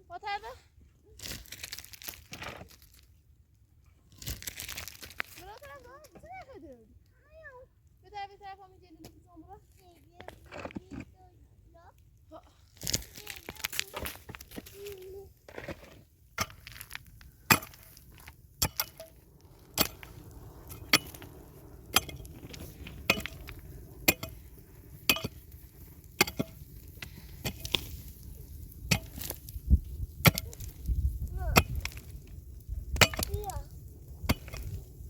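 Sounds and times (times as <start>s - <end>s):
axe chopping wood: 30.2s - 30.7s.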